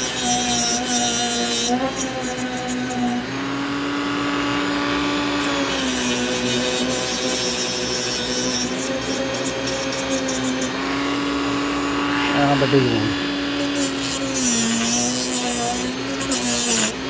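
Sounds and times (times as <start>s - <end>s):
power drill driving screws: 13.4s - 17.0s.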